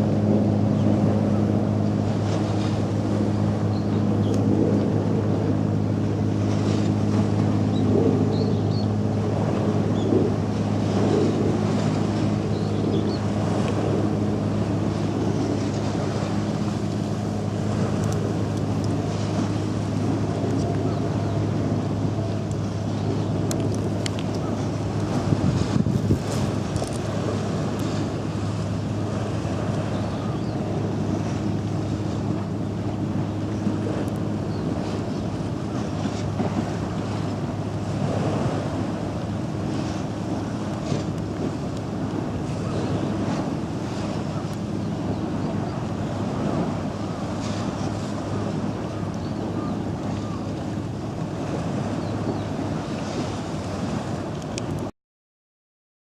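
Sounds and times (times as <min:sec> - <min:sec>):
low machine hum: 0:00.0 - 0:54.9
wind rushing on microphone: 0:00.0 - 0:54.9.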